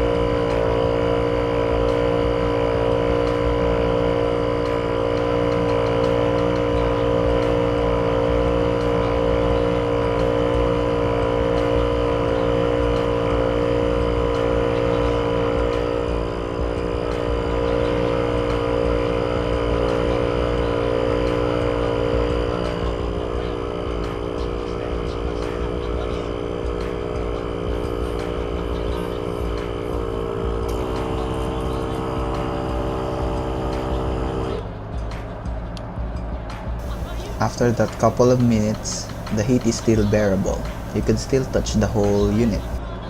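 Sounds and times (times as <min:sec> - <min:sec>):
air compressor running: 0:36.8 - 0:42.8.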